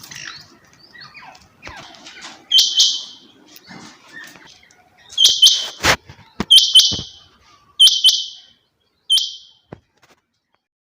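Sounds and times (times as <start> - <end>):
quail calling: 1.0 - 3.4, 4.2 - 9.6
sharp knocks: 5.8 - 7.2.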